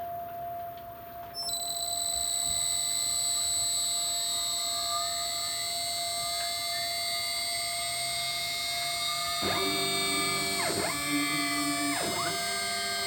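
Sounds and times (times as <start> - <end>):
router spindle whine: 1.4 - 13.0
low hum: 2.6 - 13.0.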